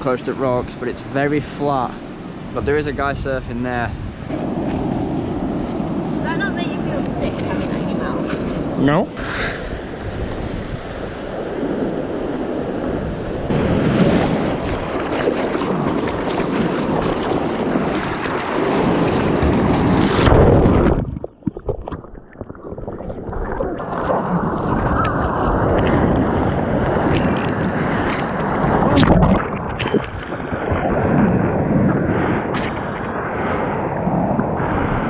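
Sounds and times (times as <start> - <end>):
wind buffeting microphone: 0.0 - 35.0
sea surf breaking: 0.2 - 21.1, 23.3 - 35.0.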